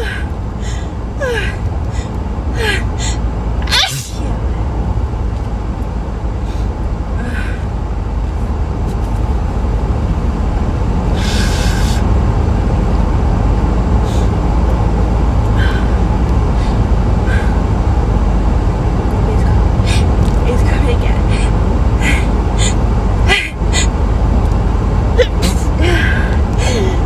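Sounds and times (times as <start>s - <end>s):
vehicle interior rumble: 0.0s - 27.0s
short breathy noises: 11.2s - 12.0s.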